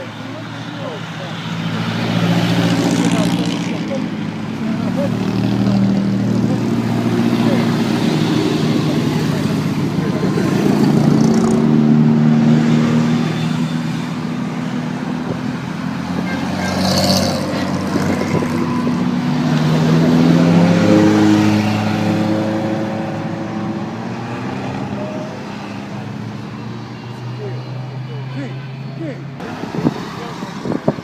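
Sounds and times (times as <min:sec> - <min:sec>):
car engines passing by: 0:00.0 - 0:31.0.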